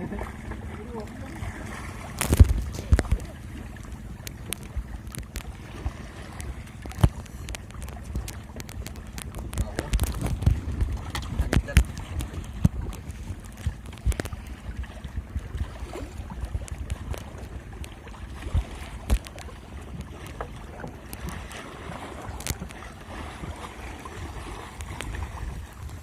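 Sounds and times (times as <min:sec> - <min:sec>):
water lapping at hull: 0:00.0 - 0:26.0
wind buffeting microphone: 0:01.2 - 0:26.0
sharp knocks and clicks: 0:06.8 - 0:14.4.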